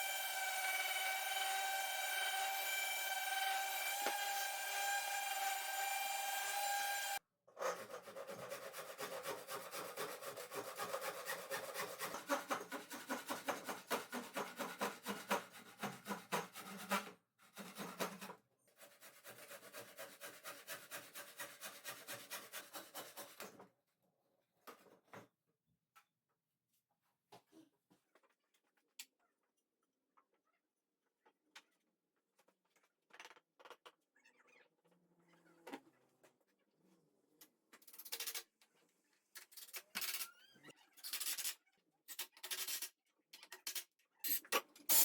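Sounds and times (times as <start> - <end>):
hand tool sawing wood: 0.0 - 7.2, 7.8 - 23.5.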